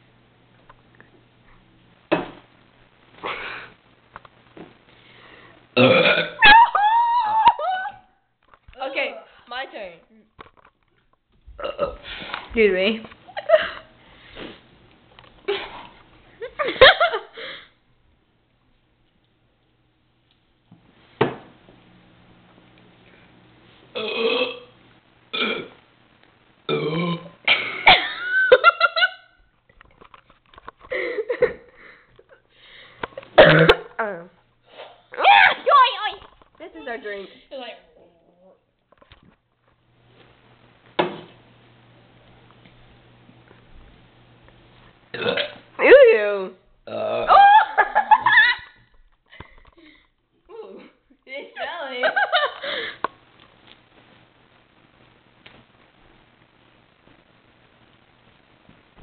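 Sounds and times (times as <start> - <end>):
loud harsh burp: 5.8 - 6.4, 11.6 - 12.0, 24.0 - 25.8, 26.7 - 27.4, 33.4 - 34.0, 45.1 - 45.6, 46.9 - 47.3
person breathing and sniffing: 14.0 - 14.7.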